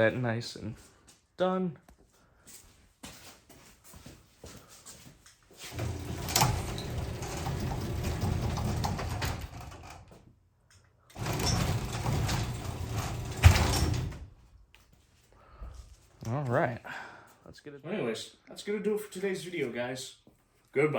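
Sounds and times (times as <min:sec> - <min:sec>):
garage door opener motor hum: 0:05.7 - 0:10.1, 0:11.1 - 0:14.3.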